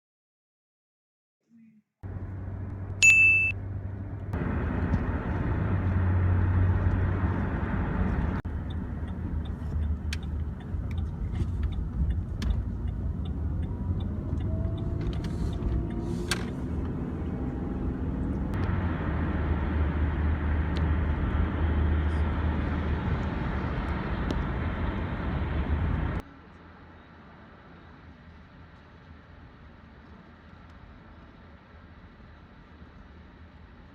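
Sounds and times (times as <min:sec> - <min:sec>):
vehicle driving rumble: 0:02.0 - 0:26.4
short high beep: 0:03.0 - 0:03.6.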